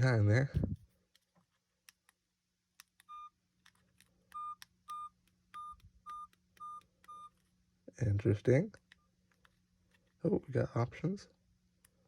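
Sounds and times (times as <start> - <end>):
phone key beeps: 3.0 - 3.4, 4.3 - 7.4.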